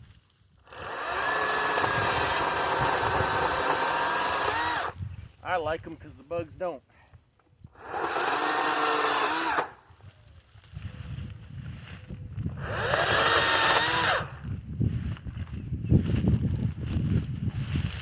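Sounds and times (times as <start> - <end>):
electric chainsaw cutting wood: 0.7 - 5.0, 7.7 - 9.8, 12.6 - 14.6.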